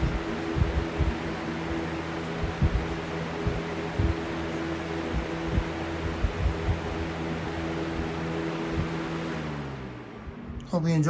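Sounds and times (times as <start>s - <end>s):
short low thumps: 0.0s - 1.3s, 2.4s - 4.3s, 5.1s - 7.1s
box fan rushing air: 0.0s - 11.0s.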